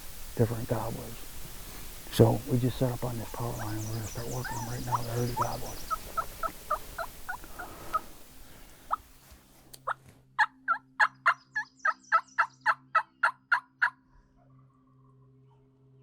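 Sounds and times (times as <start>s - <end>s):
turkey call hen yelps: 3.6s - 8.1s, 9.8s - 14.0s.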